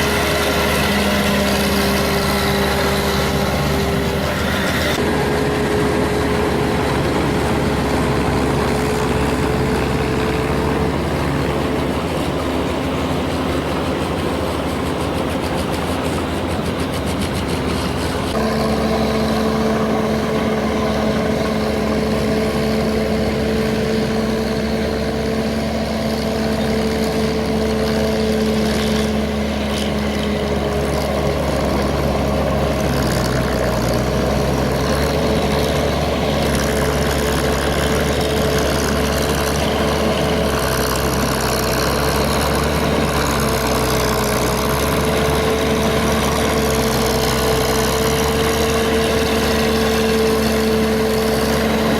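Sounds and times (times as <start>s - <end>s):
steady engine whine: 0.0s - 51.9s
tractor engine droning: 0.0s - 51.9s.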